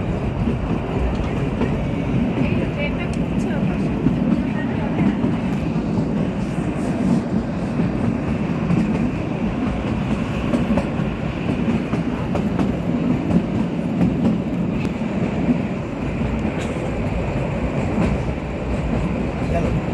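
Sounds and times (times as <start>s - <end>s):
train rumble: 0.0s - 19.9s
wheels clicking on track: 0.1s - 6.3s.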